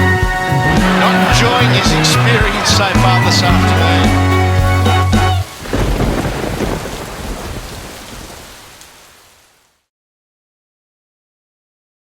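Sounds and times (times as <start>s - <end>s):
heavy rain: 0.0s - 9.9s
low thunder rolling: 3.6s - 9.2s.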